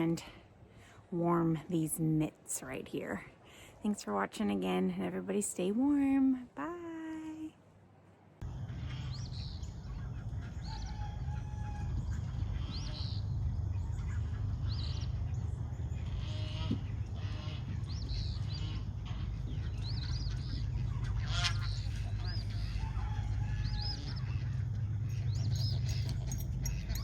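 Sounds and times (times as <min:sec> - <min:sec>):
steady low rumble: 0:07.6 - 0:27.0
chickens calling: 0:08.4 - 0:27.0.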